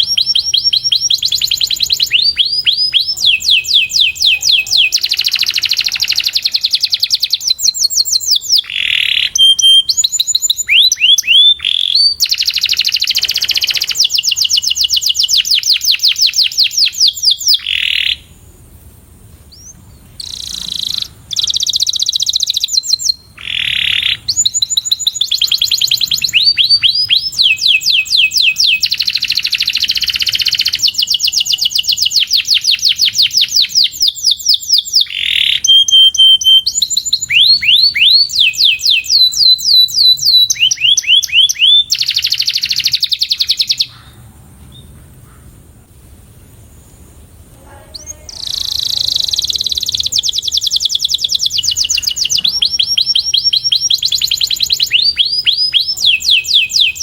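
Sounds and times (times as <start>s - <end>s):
canary singing trills: 0.0s - 18.5s, 19.5s - 45.4s, 47.6s - 57.0s.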